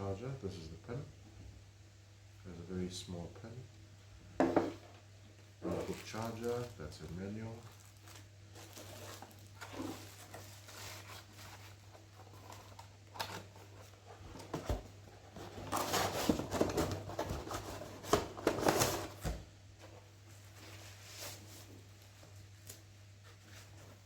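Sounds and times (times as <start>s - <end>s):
packaging rustling and crinkling: 5.6s - 24.0s.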